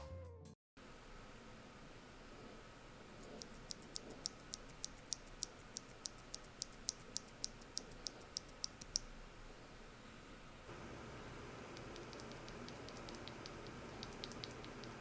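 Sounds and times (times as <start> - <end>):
key switch clicks: 11.6 - 15.0.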